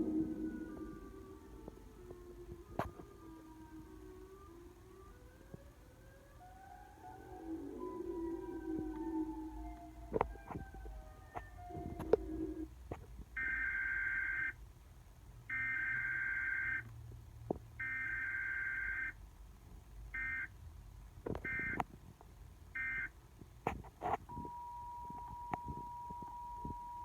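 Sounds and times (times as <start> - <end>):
steady low electronic tone: 0.0 - 14.0
electronic beeps: 21.5 - 21.8.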